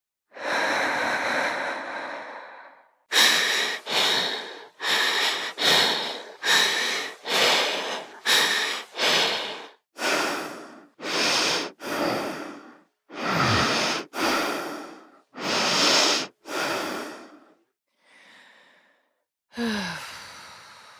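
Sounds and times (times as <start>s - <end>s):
person breathing hard: 0.3s - 20.9s.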